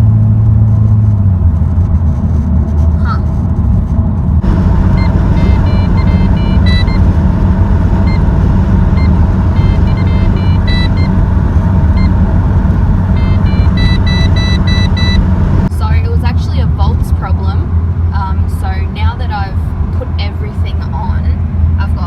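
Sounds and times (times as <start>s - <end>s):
car engine idling: 0.0s - 16.0s
short electronic warning beeps: 4.9s - 7.1s, 8.0s - 8.3s, 8.9s - 11.2s, 13.1s - 15.3s.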